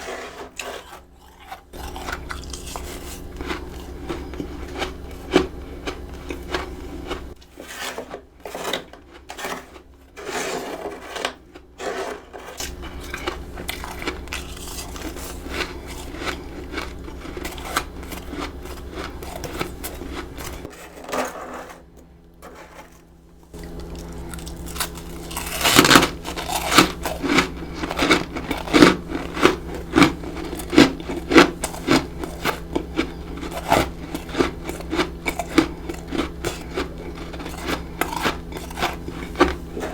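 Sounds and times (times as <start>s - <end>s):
frost being crunched and chewed: 0.8s - 7.4s, 12.6s - 20.7s, 23.5s - 39.9s.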